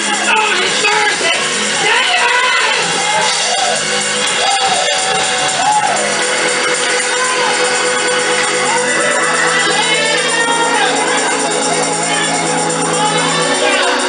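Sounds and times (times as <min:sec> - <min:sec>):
held keyboard chord: 0:00.0 - 0:14.0
percussion hits: 0:00.0 - 0:14.0
people singing: 0:06.6 - 0:14.0.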